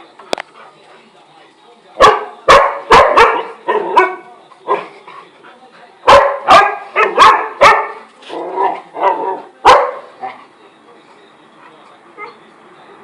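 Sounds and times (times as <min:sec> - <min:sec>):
large dogs barking: 0:02.0 - 0:04.9, 0:06.0 - 0:10.5.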